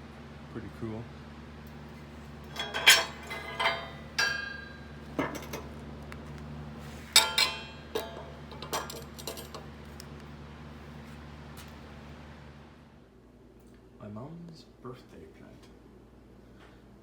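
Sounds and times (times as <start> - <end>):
glass clinking: 2.5 - 5.3.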